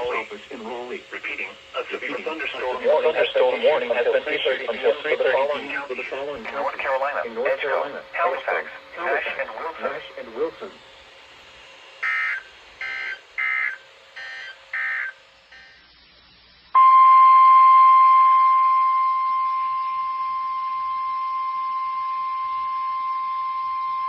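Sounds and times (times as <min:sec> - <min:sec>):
buzzy data burst chirps: 0:00.0 - 0:07.1, 0:11.6 - 0:16.9
loud steady high beep: 0:12.0 - 0:24.0.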